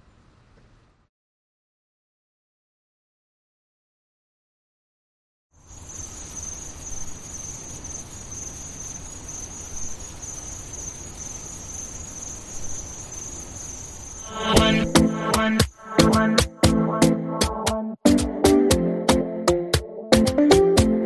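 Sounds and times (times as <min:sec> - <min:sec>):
crickets trilling: 0:05.6 - 0:16.2.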